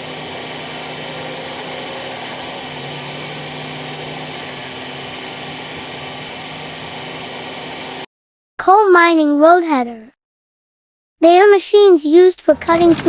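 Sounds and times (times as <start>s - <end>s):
bulldozer diesel engine running: 0.0s - 8.1s.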